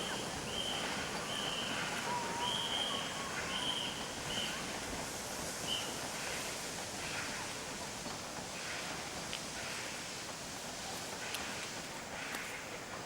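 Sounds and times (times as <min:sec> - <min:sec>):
rain hissing: 0:00.0 - 0:13.0
wavering bird whistle: 0:00.5 - 0:04.6.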